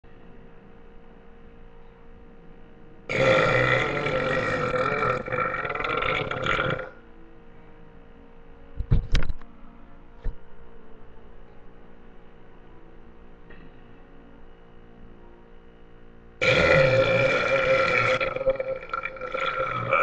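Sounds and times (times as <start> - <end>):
person burping: 3.1 - 6.9, 16.4 - 20.0.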